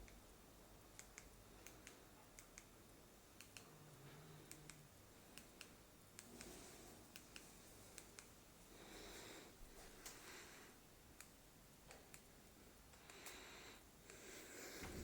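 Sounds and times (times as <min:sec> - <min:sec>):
faint sharp clicks: 0:03.4 - 0:03.7, 0:04.4 - 0:08.3, 0:11.2 - 0:12.3, 0:12.9 - 0:13.4.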